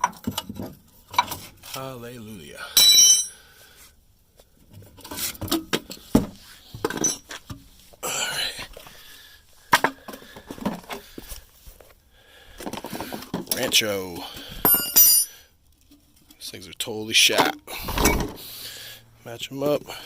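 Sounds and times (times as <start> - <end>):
tools knocking and scraping: 0.0 - 1.5, 4.7 - 7.7, 14.6 - 15.3.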